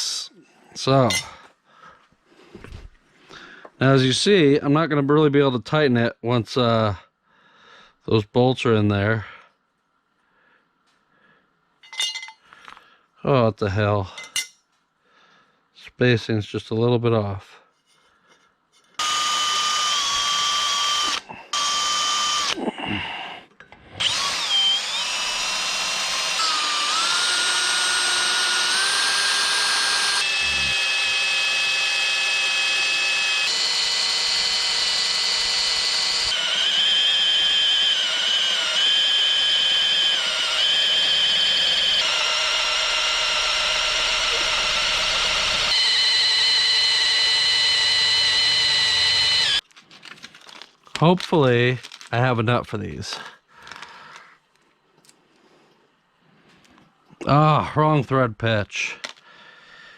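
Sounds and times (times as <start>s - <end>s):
power drill motor whine: 19.0s - 22.6s, 24.0s - 49.6s.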